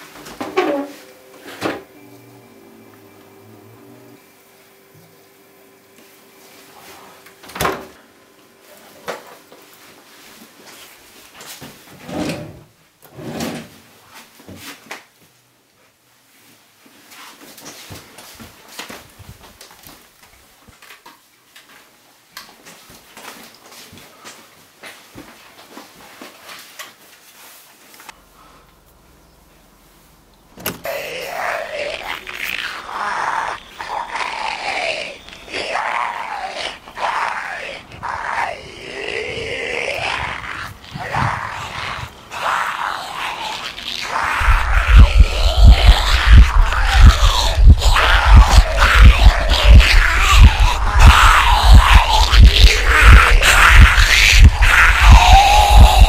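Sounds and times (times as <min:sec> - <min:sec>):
steady low hum: 0:30.2 - 0:56.0
loud growl: 0:30.8 - 0:56.0.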